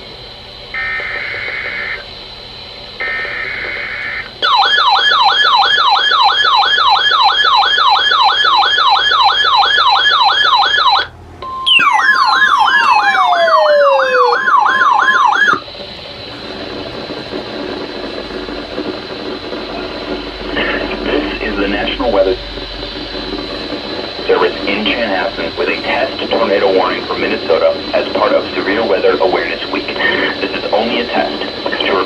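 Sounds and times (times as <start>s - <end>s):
warbling alarm: 0.7s - 2.3s, 3.0s - 32.0s
digital alert-header tones: 11.4s - 15.6s
falling whistle sweeps: 11.4s - 15.6s
steady alert tone: 11.4s - 15.6s.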